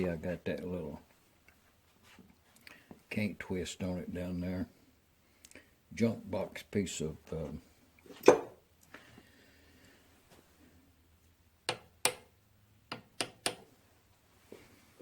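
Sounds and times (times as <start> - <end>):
metal parts clicking and tapping: 12.9 - 13.7.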